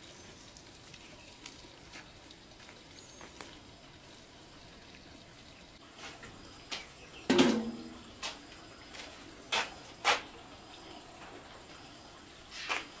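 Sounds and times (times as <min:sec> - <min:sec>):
knocks and clicks of objects: 0:06.0 - 0:08.4.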